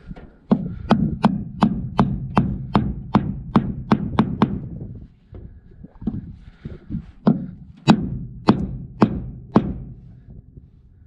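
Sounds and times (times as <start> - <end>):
sharp knocks on hard surface: 0.5 - 4.6, 7.2 - 10.0.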